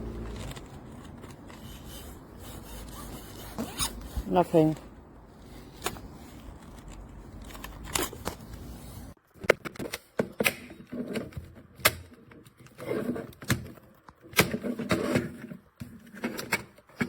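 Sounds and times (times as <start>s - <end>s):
person speaking: 4.2s - 5.0s.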